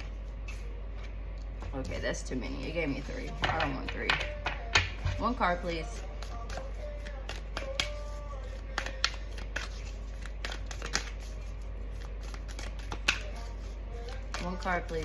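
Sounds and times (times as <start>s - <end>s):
cards being shuffled: 3.0s - 15.0s.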